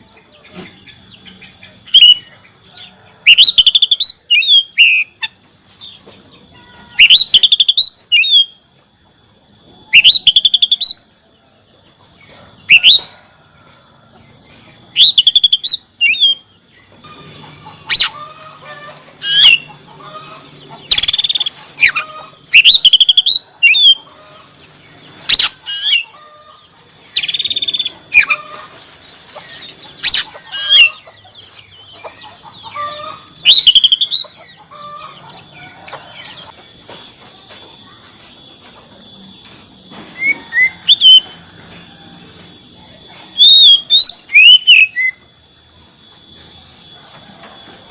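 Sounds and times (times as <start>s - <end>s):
bird singing whistles and trills: 1.8s - 2.3s, 3.2s - 5.2s, 7.0s - 8.7s, 9.8s - 11.1s, 12.6s - 13.2s, 14.9s - 16.9s, 19.2s - 19.7s, 20.8s - 24.1s, 25.3s - 26.1s, 27.1s - 28.4s, 29.6s - 36.6s, 40.1s - 41.5s, 42.9s - 46.8s.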